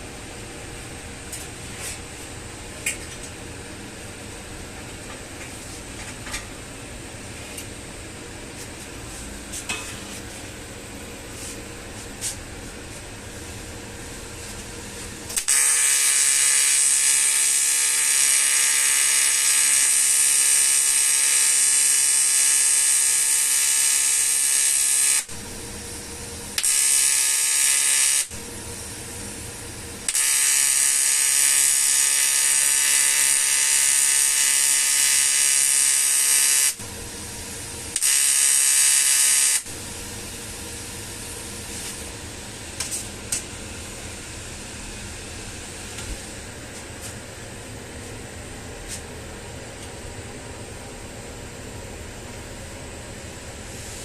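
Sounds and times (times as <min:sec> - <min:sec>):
welding arc buzzing: 0:14.6 - 0:46.4.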